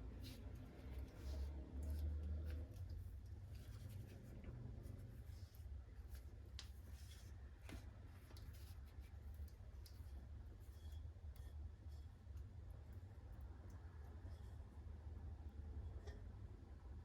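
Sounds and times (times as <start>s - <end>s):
low steady hum: 0.0s - 17.0s
small clicks of kitchen things: 7.6s - 10.2s.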